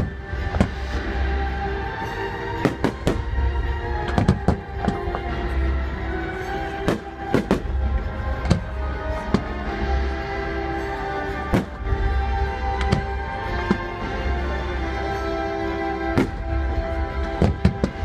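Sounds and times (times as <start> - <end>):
steady music: 0.0 - 18.0
fireworks bursting: 2.6 - 5.2.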